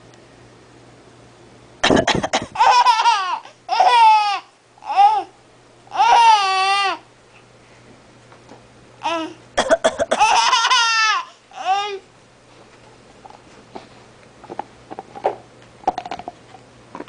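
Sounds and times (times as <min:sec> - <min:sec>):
adult fake coughing: 0:01.8 - 0:02.6, 0:09.6 - 0:10.4
baby laughing: 0:01.8 - 0:05.3, 0:10.1 - 0:12.0.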